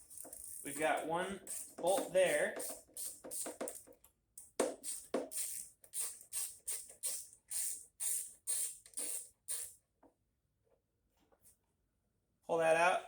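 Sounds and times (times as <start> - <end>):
socket ratchet clicking: 1.4 - 9.8.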